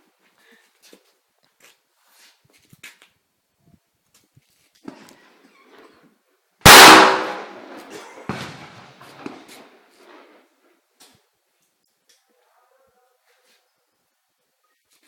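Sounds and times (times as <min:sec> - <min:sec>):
gunshot: 0:06.7 - 0:07.6.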